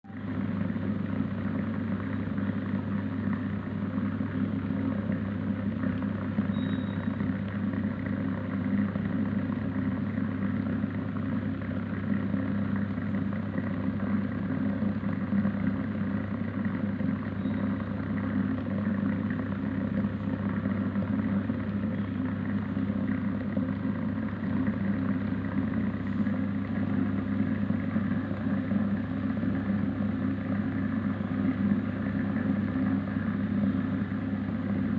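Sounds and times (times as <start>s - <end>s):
steam vaporizer humming and hissing: 6.4s - 8.1s, 17.2s - 34.9s.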